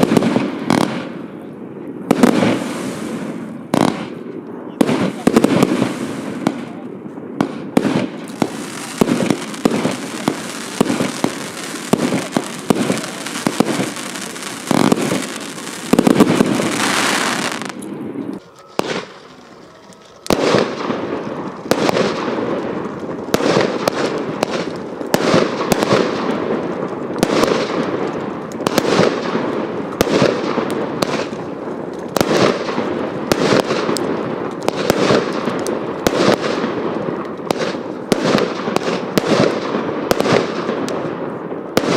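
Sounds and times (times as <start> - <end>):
firework hissing and crackling: 2.1 - 4.2, 4.8 - 6.8, 7.4 - 40.9
firework launches and bangs: 7.4 - 19.6.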